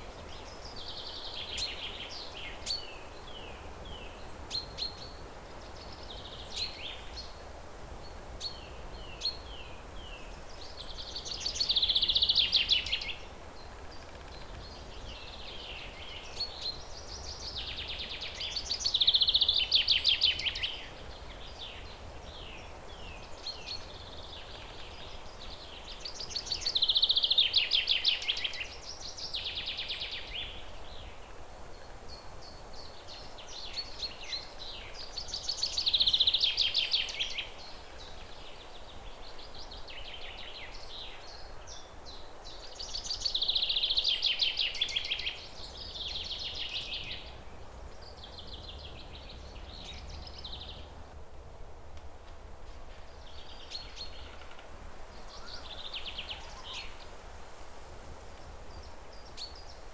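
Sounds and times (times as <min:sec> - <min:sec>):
steady background hiss: 0:00.0 - 0:59.9
songbirds trilling: 0:08.1 - 0:51.2, 0:52.9 - 0:57.4.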